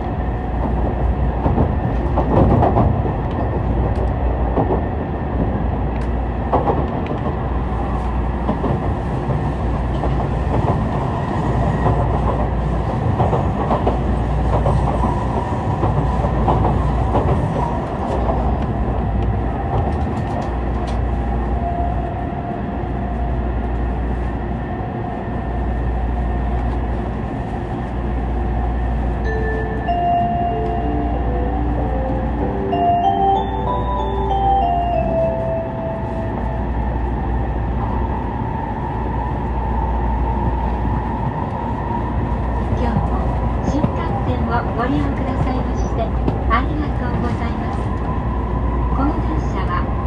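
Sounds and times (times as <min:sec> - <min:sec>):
train rumble with wheel clicks: 0:00.0 - 0:50.0
onboard chime: 0:29.3 - 0:36.0.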